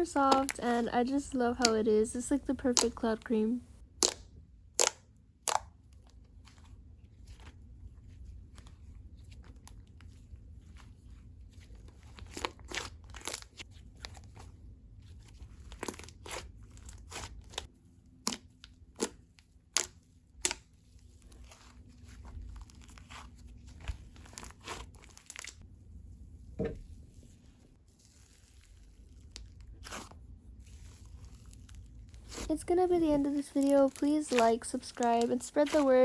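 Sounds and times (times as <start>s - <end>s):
slime crackling and popping: 0.1s - 0.8s, 2.4s - 4.2s, 4.8s - 5.7s, 12.0s - 13.6s, 21.4s - 25.6s, 28.0s - 36.0s.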